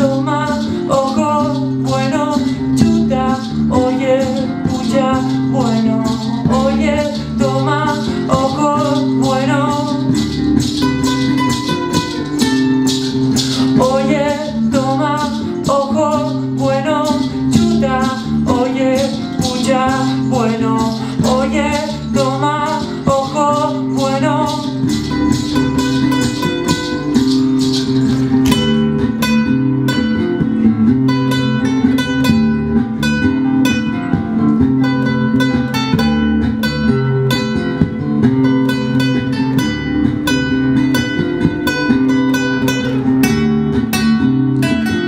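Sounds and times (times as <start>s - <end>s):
acoustic guitar strumming: 0.0s - 45.0s
wavering melody line: 0.1s - 29.6s.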